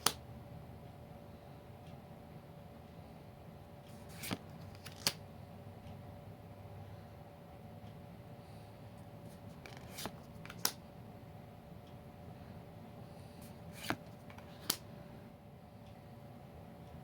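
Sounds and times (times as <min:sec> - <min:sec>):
steady low hum: 0:00.0 - 0:17.0
cards and packaging rustling: 0:03.9 - 0:05.2, 0:09.3 - 0:10.8, 0:13.4 - 0:14.8.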